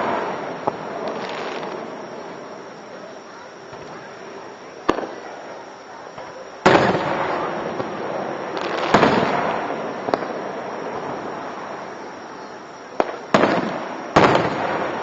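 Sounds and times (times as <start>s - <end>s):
fireworks bangs with rumble: 4.8s - 5.3s, 6.1s - 11.4s, 12.9s - 15.0s.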